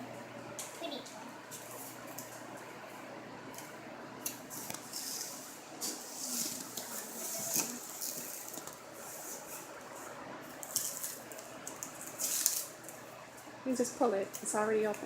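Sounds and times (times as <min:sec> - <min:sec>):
packaging rustling and crinkling: 0:04.6 - 0:09.6, 0:10.6 - 0:13.0.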